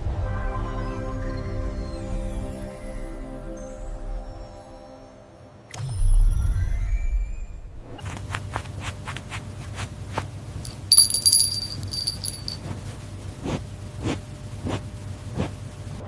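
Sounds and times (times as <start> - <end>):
high metallic jingling: 10.7 - 12.6.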